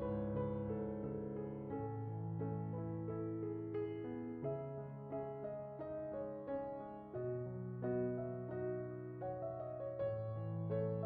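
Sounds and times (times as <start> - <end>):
gentle piano melody: 0.0 - 11.0.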